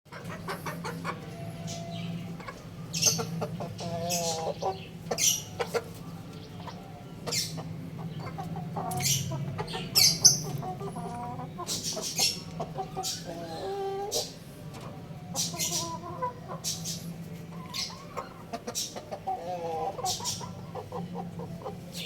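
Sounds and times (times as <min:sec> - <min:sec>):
young roosters chirping and clucking: 0:00.1 - 0:22.0
steady low hum: 0:00.2 - 0:13.6.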